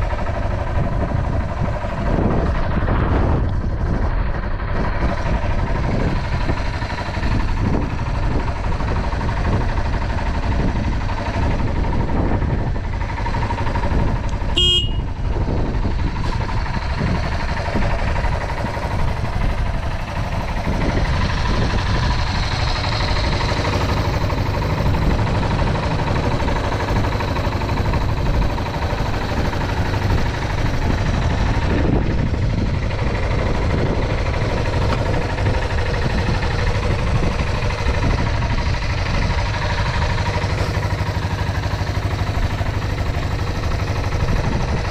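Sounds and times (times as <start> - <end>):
motorcycle engine idling: 0.0 - 44.9
short high beep: 14.6 - 15.1.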